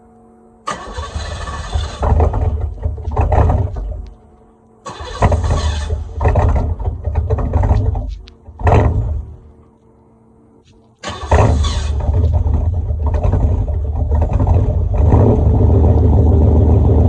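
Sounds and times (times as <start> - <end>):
car engine revving: 0.7 - 9.7, 11.0 - 17.0.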